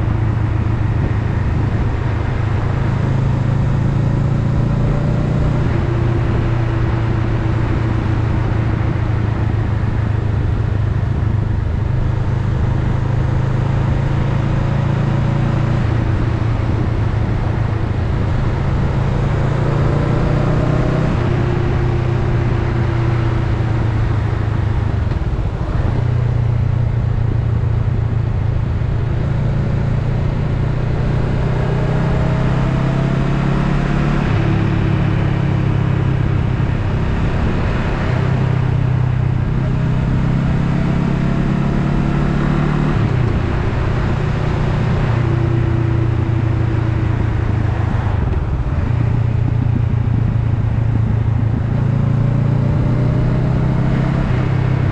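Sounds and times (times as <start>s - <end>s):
wind and road noise: 0.0s - 54.9s
motorcycle engine running: 43.0s - 54.9s.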